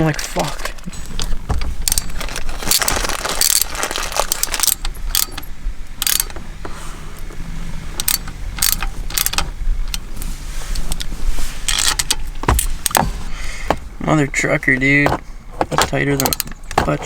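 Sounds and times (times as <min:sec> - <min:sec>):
socket ratchet clicking: 0:04.3 - 0:06.4, 0:08.0 - 0:10.0, 0:16.2 - 0:16.7.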